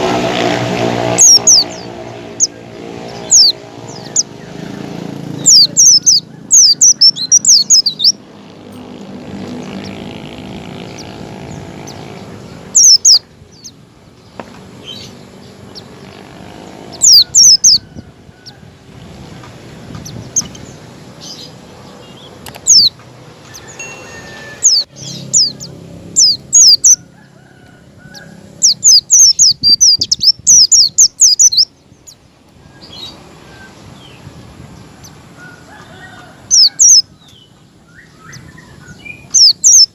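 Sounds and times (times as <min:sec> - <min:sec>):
birds calling high thin notes: 0:00.0 - 0:18.6, 0:19.2 - 0:27.0.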